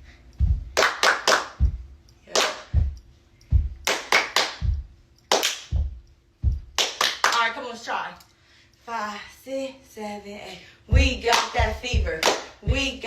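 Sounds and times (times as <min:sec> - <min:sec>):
hand claps: 0:00.8 - 0:01.7, 0:02.3 - 0:03.0, 0:03.8 - 0:05.9, 0:06.5 - 0:07.5, 0:11.3 - 0:12.6.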